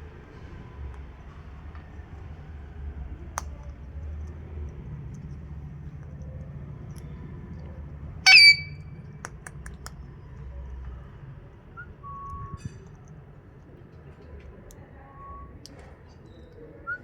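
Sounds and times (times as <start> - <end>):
faint brief whistle: 8.3 - 8.9, 11.8 - 12.7
parrot shrill call: 8.3 - 8.9.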